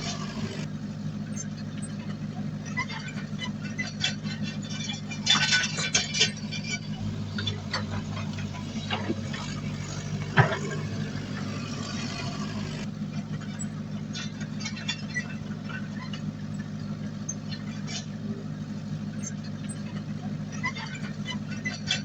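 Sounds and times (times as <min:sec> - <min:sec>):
diesel engine running: 0:00.0 - 0:22.0
metallic clanks and knocks: 0:03.7 - 0:12.9.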